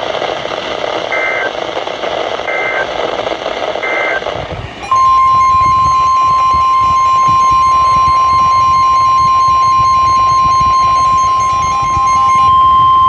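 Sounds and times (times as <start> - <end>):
radio static: 0.0 - 13.0
warbling data bursts: 0.6 - 13.0
loud steady alert tone: 3.8 - 4.2, 4.8 - 13.0.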